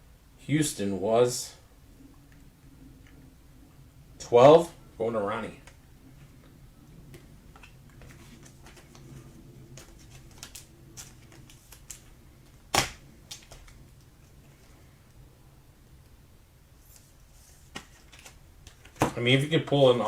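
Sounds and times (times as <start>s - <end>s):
cards clicking and flicking: 9.7s - 13.8s.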